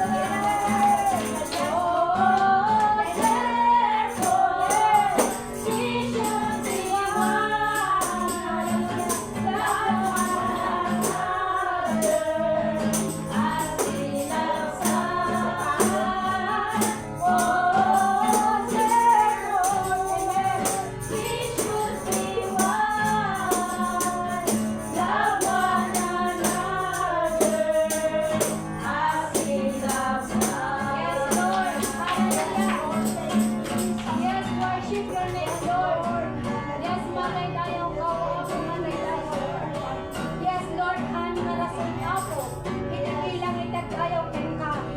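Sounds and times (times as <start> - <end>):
shaken percussion beat: 0.0 - 2.0, 3.1 - 34.4
voices singing: 0.0 - 44.9.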